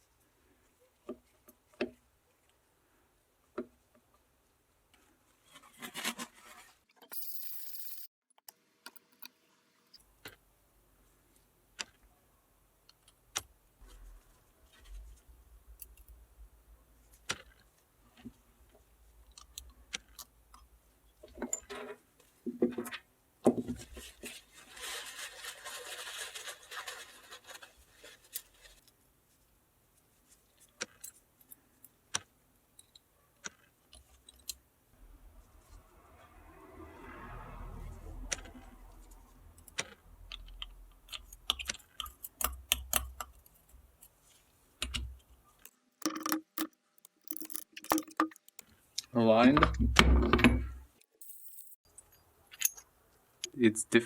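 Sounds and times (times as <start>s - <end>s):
small metal parts clicking: 45.6s - 48.6s, 51.0s - 52.8s.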